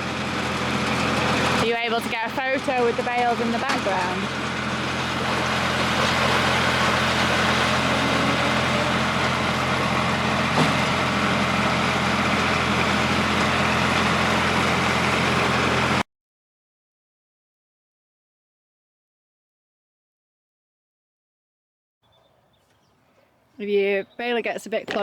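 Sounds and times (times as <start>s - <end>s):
tractor engine running: 0.0s - 16.0s.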